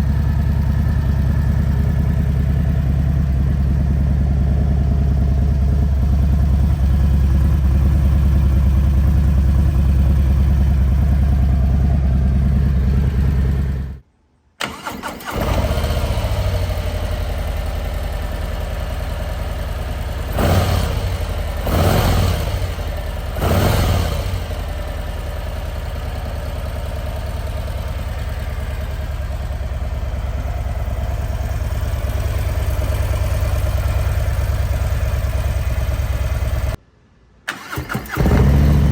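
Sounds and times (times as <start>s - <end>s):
motorcycle engine idling: 0.0s - 14.0s, 15.5s - 36.8s, 38.2s - 38.9s
motorcycle throttle blips: 0.0s - 14.0s.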